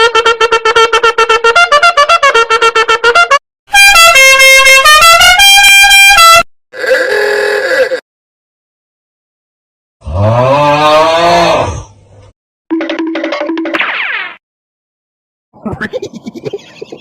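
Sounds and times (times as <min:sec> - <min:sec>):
horn-like melody: 0:00.0 - 0:06.5.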